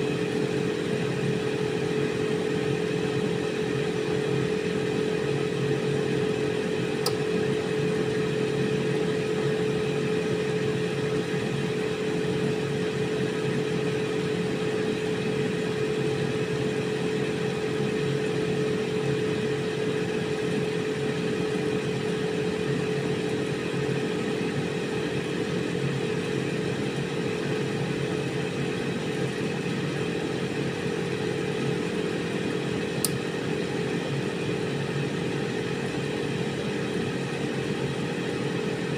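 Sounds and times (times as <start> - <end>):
air fryer fan whirring hum: 0.0 - 38.9
air fryer click: 7.0 - 7.4, 33.0 - 33.3.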